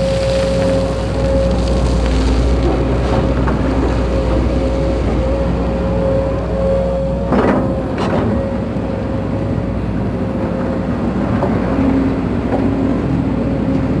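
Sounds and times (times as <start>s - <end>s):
excavator diesel engine running: 0.0s - 14.0s
steady hydraulic whine: 0.0s - 14.0s.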